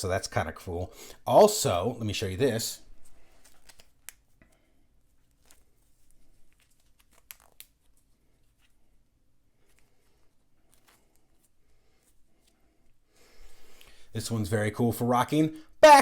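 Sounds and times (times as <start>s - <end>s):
faint rustling of watch strap: 2.9s - 14.1s.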